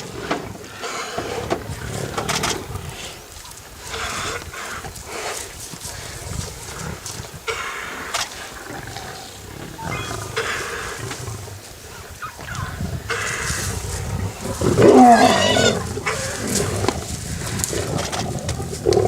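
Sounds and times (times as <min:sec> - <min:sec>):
big cat growling and roaring: 0:06.0 - 0:19.0.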